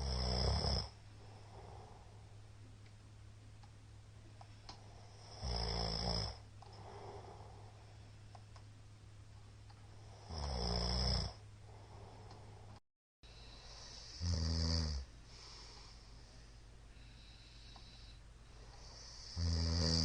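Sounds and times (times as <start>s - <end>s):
man snoring loudly: 0.0s - 1.9s, 5.2s - 7.4s, 10.0s - 11.4s, 13.8s - 15.1s, 18.8s - 20.0s
quiet breathing: 0.0s - 2.8s, 4.2s - 8.6s, 9.7s - 20.0s
steady low hum: 0.0s - 20.0s.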